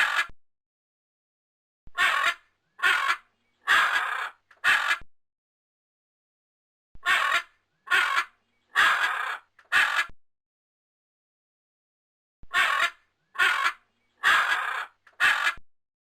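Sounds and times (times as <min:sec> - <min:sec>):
crow cawing: 0:02.0 - 0:05.0, 0:07.0 - 0:10.1, 0:12.5 - 0:15.6.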